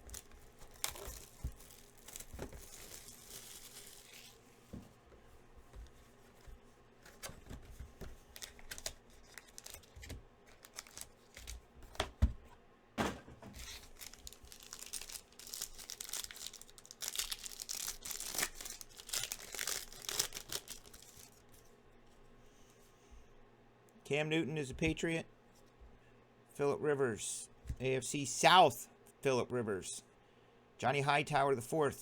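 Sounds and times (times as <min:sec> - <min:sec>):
wrappers tearing and crinkling: 0:00.0 - 0:04.4, 0:08.2 - 0:12.1, 0:13.6 - 0:21.5
cards clicking and rustling: 0:05.7 - 0:12.3, 0:13.5 - 0:21.4.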